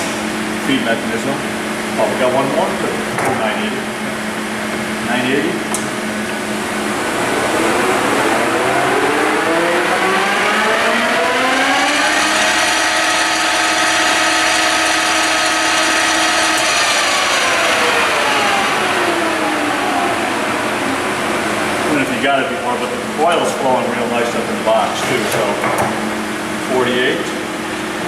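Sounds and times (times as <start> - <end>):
lathe gear whine: 3.8 - 23.4.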